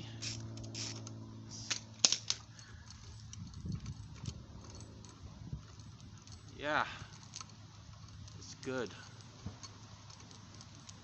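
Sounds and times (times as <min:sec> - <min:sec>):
metal hardware clinking: 0:00.2 - 0:11.0.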